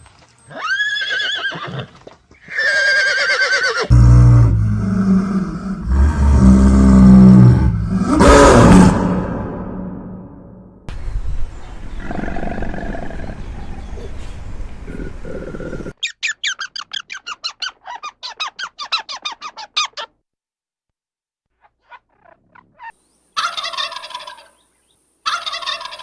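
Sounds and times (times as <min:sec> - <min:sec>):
rough noisy animal call: 0:03.2 - 0:10.5.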